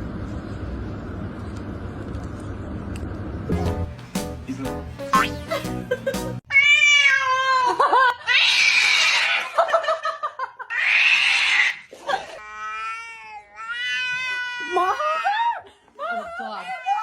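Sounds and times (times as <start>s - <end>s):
cat screeching: 6.5s - 7.5s, 8.3s - 9.5s, 10.7s - 14.8s
cat yowling: 6.5s - 7.6s, 8.3s - 9.5s, 10.7s - 11.8s, 12.5s - 15.0s.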